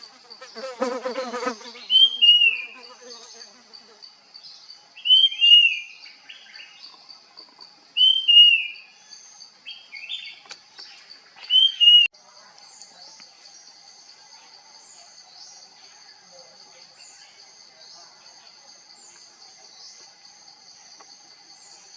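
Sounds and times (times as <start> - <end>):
bird singing whistled phrases: 8.0 - 8.8, 11.5 - 12.1.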